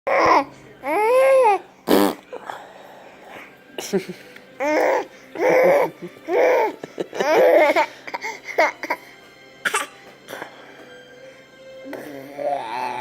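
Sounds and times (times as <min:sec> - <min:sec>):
baby laughing: 0:04.6 - 0:09.0.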